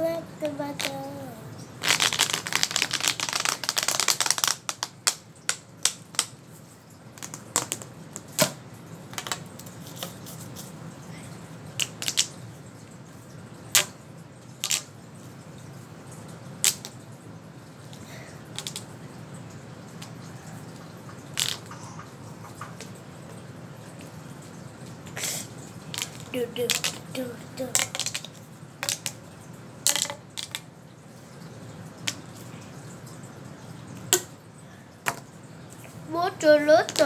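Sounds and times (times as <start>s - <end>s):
fidget toy clicking: 26.0s - 29.2s, 36.7s - 37.0s.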